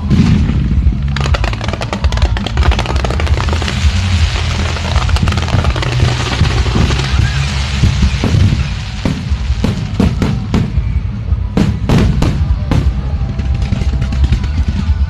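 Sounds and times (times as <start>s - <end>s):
low rumble: 0.0s - 1.4s
fireworks bangs: 0.0s - 15.0s
music: 0.0s - 15.0s.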